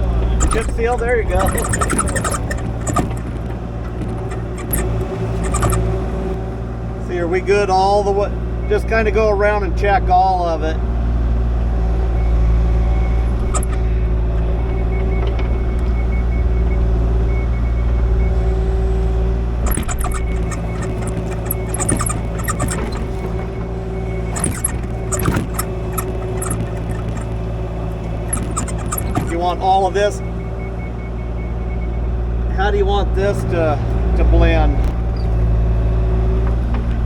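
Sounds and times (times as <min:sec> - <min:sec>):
excavator diesel engine running: 0:00.0 - 0:07.5
clicks and clatter: 0:00.4 - 0:06.4, 0:19.6 - 0:29.4.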